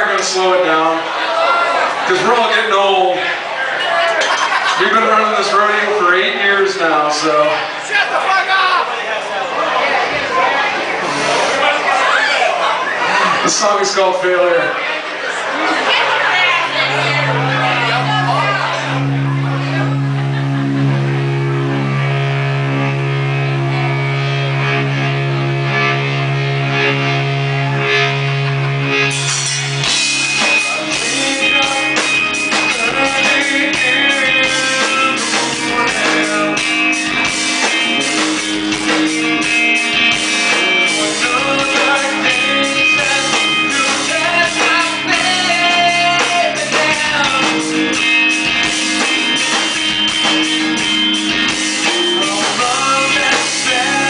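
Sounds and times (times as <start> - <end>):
live rock band playing: 0.0 - 8.2, 10.1 - 54.0
drums: 15.3 - 54.0
held guitar note: 16.3 - 53.0.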